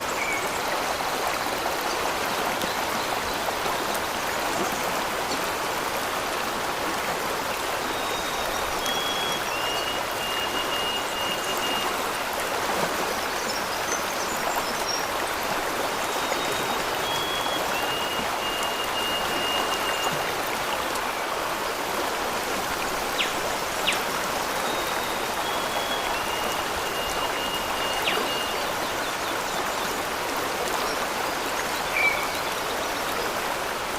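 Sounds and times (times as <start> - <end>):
waterfall rushing: 0.0 - 33.9
high whistled call: 17.0 - 20.3.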